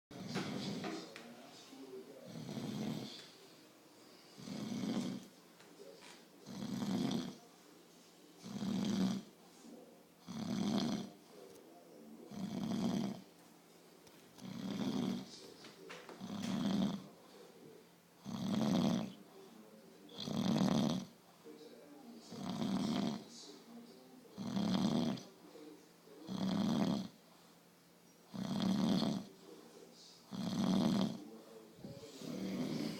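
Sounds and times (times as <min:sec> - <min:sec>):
person snoring: 0:02.2 - 0:03.2, 0:04.3 - 0:05.3, 0:06.4 - 0:07.4, 0:08.4 - 0:09.3, 0:10.2 - 0:11.2, 0:12.3 - 0:13.2, 0:14.4 - 0:15.3, 0:16.2 - 0:17.1, 0:18.2 - 0:19.2, 0:20.1 - 0:21.1, 0:22.3 - 0:23.3, 0:24.3 - 0:25.3, 0:26.3 - 0:27.2, 0:28.3 - 0:29.3, 0:30.2 - 0:32.9.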